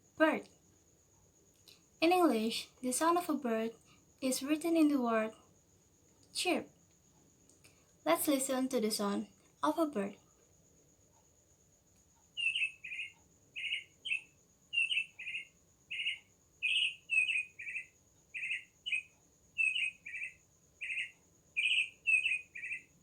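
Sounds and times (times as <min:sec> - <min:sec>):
bird chirping: 0:12.3 - 0:23.0.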